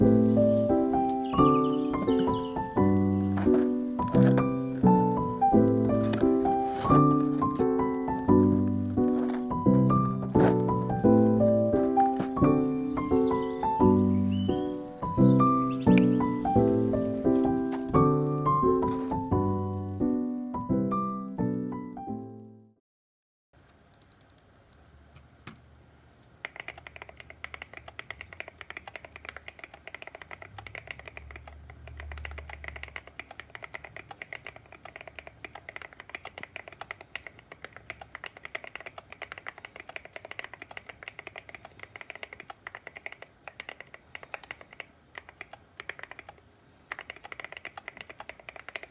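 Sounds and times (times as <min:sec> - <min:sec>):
mechanical keyboard typing: 0:01.4 - 0:13.5, 0:26.4 - 0:48.9.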